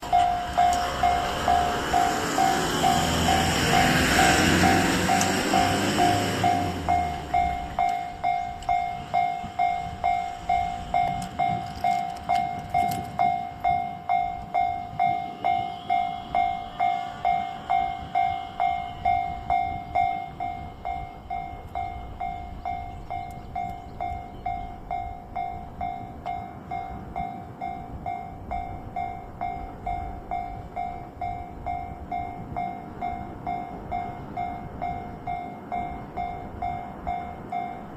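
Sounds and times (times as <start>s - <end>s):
level crossing alarm bell: 0.0s - 37.9s
train rushing rumble: 0.0s - 37.9s.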